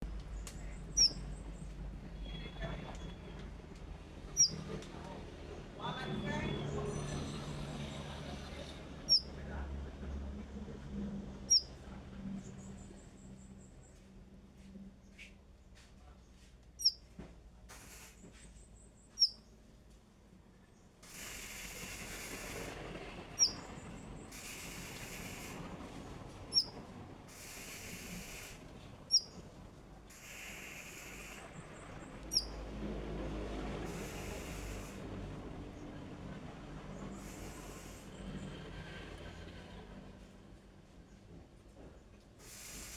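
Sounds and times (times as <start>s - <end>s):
songbird short high calls: 0.9s - 1.3s, 4.4s - 4.6s, 9.1s - 9.3s, 11.5s - 11.7s, 16.8s - 17.1s, 19.2s - 19.4s, 23.4s - 23.7s, 26.5s - 28.5s, 29.1s - 29.4s, 32.3s - 32.6s
hiss: 17.7s - 18.5s, 21.0s - 29.3s, 30.1s - 32.5s, 33.8s - 35.3s, 37.1s - 38.5s, 42.4s - 42.9s.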